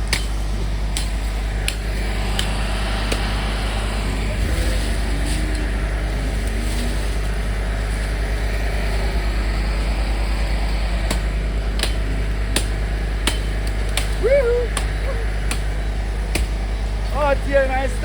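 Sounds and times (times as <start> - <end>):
vehicle engine rumbling: 0.0 - 18.0.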